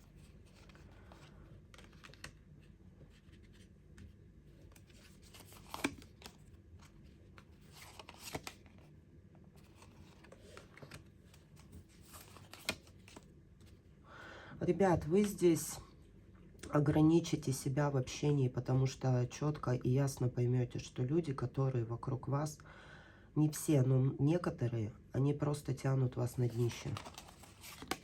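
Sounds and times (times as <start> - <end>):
cards rustling: 0.0 - 8.9, 9.6 - 13.9, 26.3 - 28.0.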